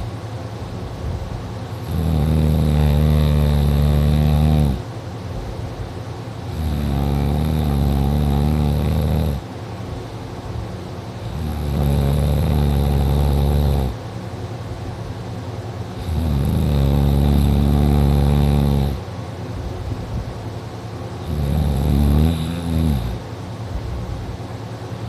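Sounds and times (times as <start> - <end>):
loud rattling snoring: 1.7 - 4.9, 6.4 - 9.5, 11.2 - 14.0, 15.9 - 19.1, 21.2 - 23.3.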